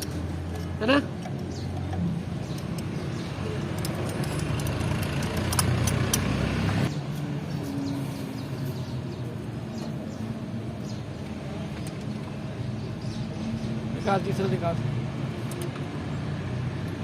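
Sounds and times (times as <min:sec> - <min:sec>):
hand tools clicking: 0:00.0 - 0:06.4.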